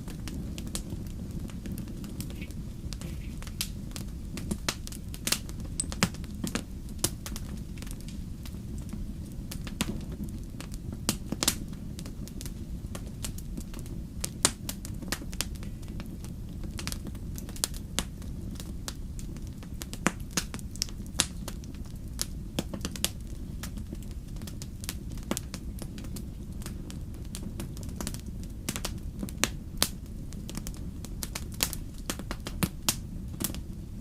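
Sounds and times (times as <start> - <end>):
campfire crackling and popping: 0.0 - 34.0.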